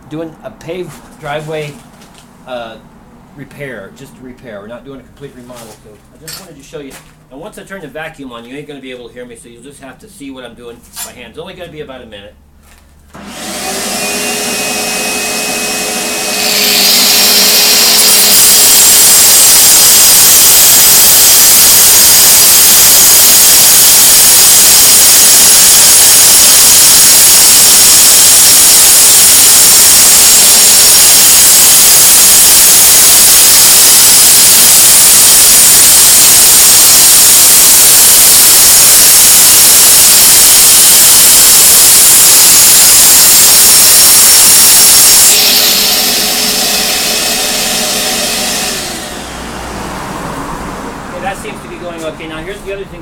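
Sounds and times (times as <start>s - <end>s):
concrete cutting saw: 13.2s - 50.1s
vacuum motor whine: 13.2s - 50.1s.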